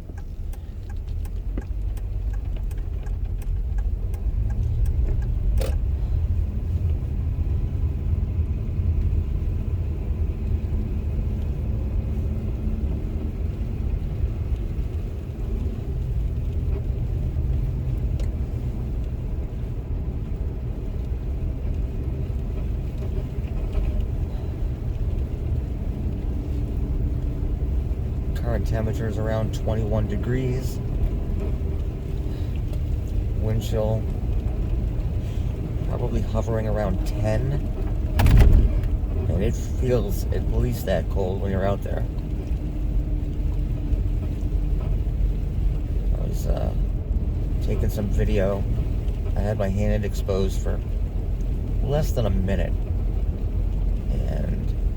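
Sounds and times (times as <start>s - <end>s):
engine and tyre rumble: 0.0s - 54.9s
sharp click: 38.2s - 39.0s.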